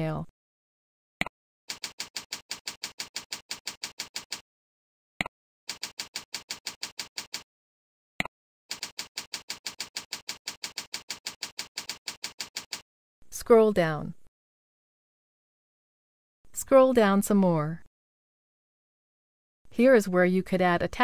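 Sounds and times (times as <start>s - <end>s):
keyboard typing: 1.7s - 4.4s, 5.2s - 7.4s, 8.2s - 12.8s.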